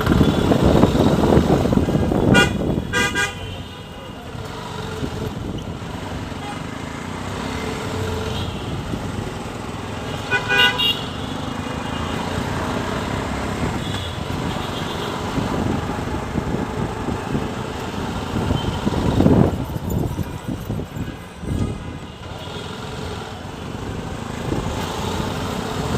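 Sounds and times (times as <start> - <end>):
street traffic: 0.0 - 25.9
vehicle horn honking: 2.2 - 3.9, 10.2 - 11.4.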